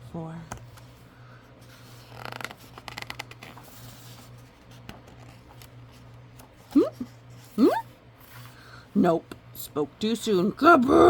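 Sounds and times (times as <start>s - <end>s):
paper page rustling: 1.6s - 6.7s.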